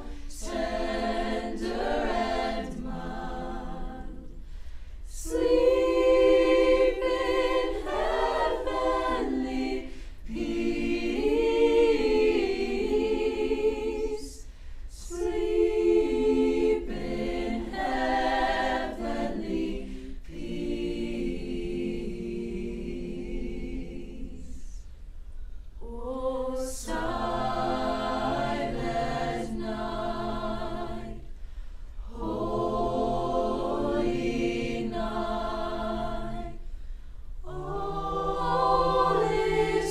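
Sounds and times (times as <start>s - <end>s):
choir singing unaccompanied: 0.0s - 24.9s, 25.8s - 31.4s, 32.0s - 36.7s, 37.4s - 39.9s.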